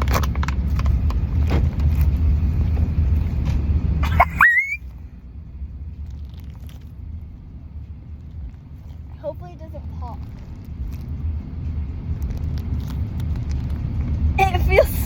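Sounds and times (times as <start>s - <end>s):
low rumble: 0.0s - 15.0s
short rising squeak: 4.0s - 4.8s
plastic packaging crinkling: 6.0s - 7.0s, 10.1s - 11.3s, 12.1s - 14.1s.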